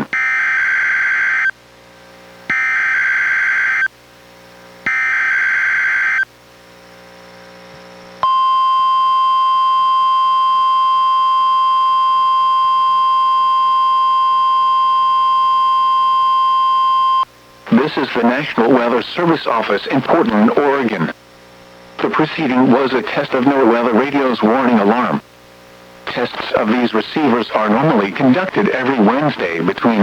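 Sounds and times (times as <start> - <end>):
steady warning alarm tone: 0.0 - 1.5, 2.5 - 3.9, 4.8 - 6.3, 8.2 - 19.3.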